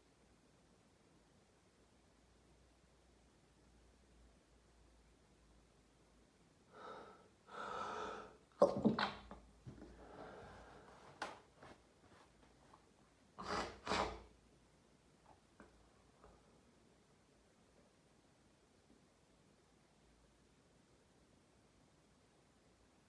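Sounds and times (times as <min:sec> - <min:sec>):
breathing: 0:06.7 - 0:08.4, 0:09.8 - 0:11.2
gasping in-breath: 0:06.7 - 0:08.4
person sneezing: 0:13.4 - 0:14.3.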